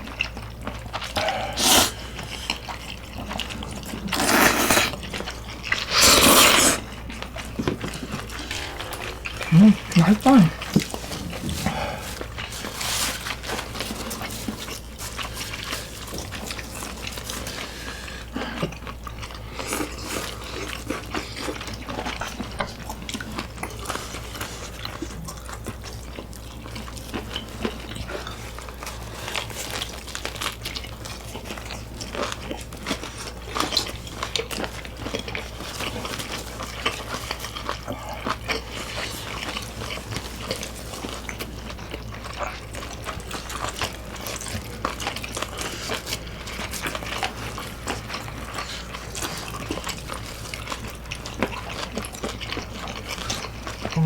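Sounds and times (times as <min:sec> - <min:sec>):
chewing and biting food: 0:00.0 - 0:54.0.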